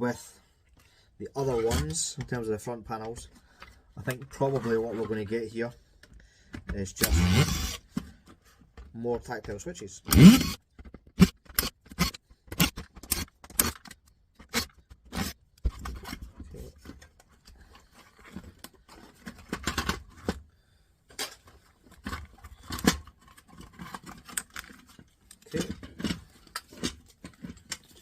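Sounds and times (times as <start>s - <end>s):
plastic and metal parts clattering: 10.6s - 28.0s.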